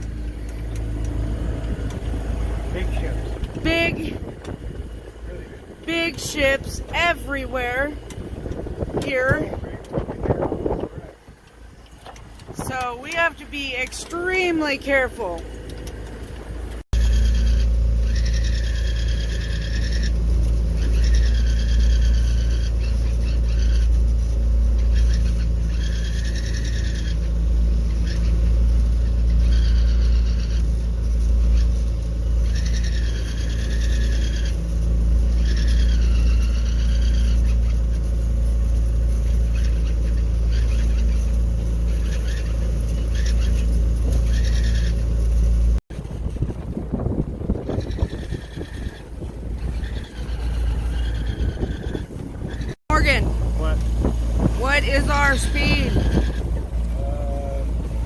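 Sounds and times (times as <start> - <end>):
high squealing tone: 0.0 - 11.4, 16.9 - 45.7, 46.8 - 58.0
boat engine drone: 0.0 - 58.0.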